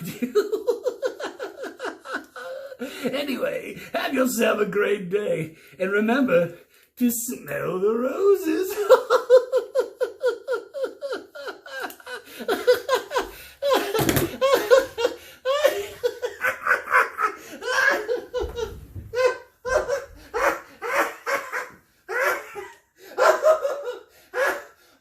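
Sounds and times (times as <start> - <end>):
man laughing: 0.0 - 3.0, 8.5 - 24.8.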